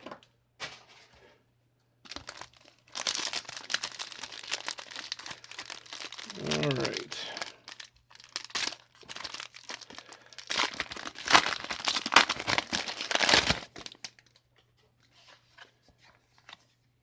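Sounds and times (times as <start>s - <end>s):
foil wrapper crinkling and tearing: 2.0s - 14.4s.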